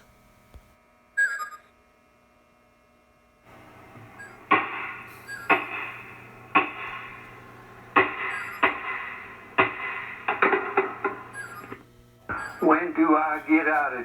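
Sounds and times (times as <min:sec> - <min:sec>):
low steady hum: 0:01.8 - 0:14.0
electronic chirp: 0:04.1 - 0:07.3, 0:08.0 - 0:12.9
sharp ringing strikes: 0:04.2 - 0:11.7.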